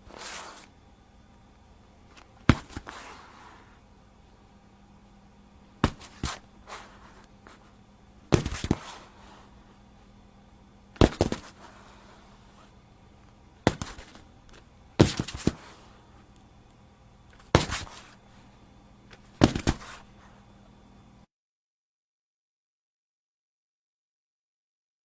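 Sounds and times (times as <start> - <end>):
body falling heavy impact: 5.8 - 6.4, 11.0 - 11.6, 19.4 - 19.9.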